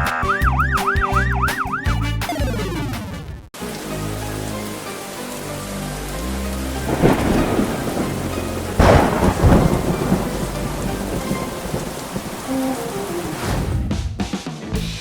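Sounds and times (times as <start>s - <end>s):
soft background music: 3.6s - 13.4s
steady rain: 3.6s - 13.8s
thunderclaps: 6.8s - 13.9s.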